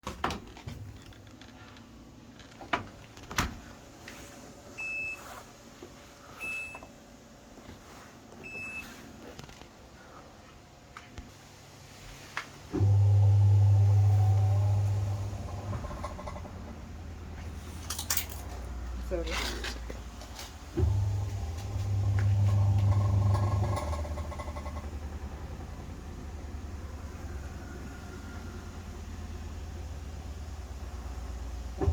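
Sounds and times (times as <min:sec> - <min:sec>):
washing machine beeping: 0:04.7 - 0:05.4, 0:06.3 - 0:06.9, 0:08.4 - 0:09.0, 0:20.8 - 0:24.6
washing machine motor humming: 0:11.4 - 0:31.9.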